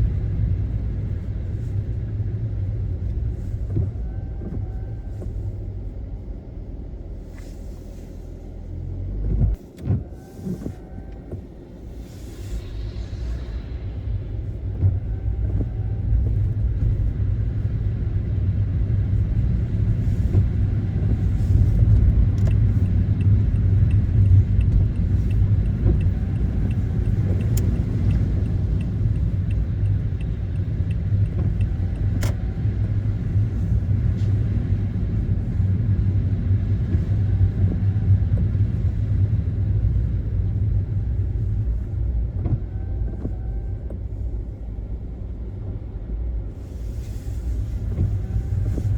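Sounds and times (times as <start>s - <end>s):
car tyres and engine rumble: 0.0s - 48.9s
light regular ticking: 21.6s - 32.3s.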